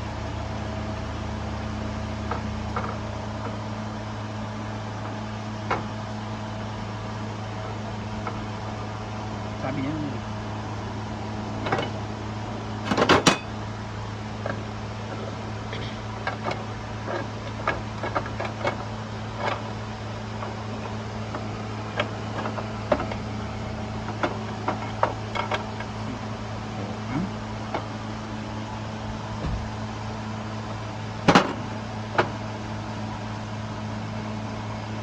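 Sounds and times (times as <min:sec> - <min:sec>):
steady low hum: 0:00.0 - 0:35.0
tools clicking and knocking: 0:12.9 - 0:13.5.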